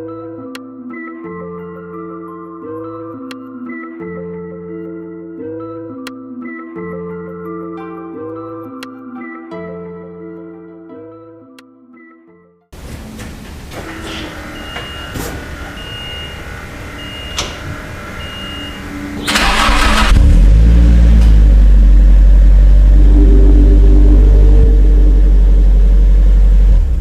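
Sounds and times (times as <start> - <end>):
car engine starting and running: 14.4 - 27.0.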